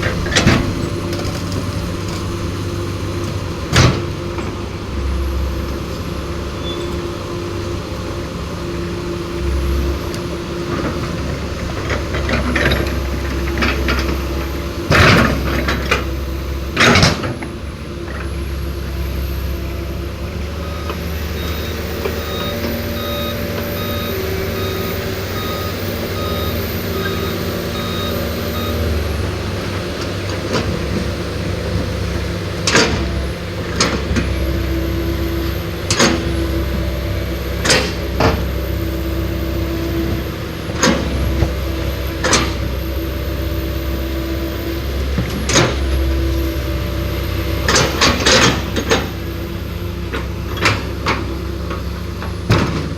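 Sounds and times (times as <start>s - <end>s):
heavy diesel machinery running: 0.0s - 52.9s
reversing alarm beeping: 20.5s - 29.5s.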